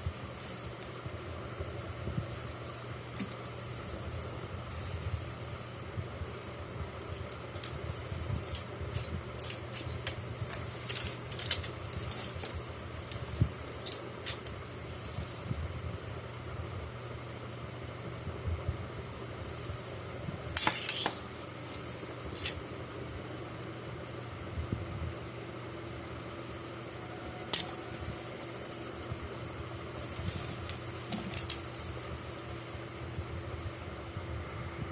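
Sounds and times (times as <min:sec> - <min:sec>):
steady low hum: 0:00.0 - 0:34.9
packaging rustling: 0:07.0 - 0:14.6.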